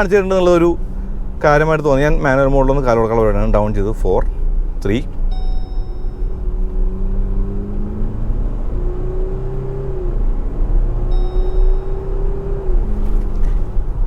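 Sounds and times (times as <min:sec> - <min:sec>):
diesel engine accelerating: 0:00.0 - 0:14.0
short high electronic beep: 0:05.3 - 0:06.3, 0:11.1 - 0:12.2.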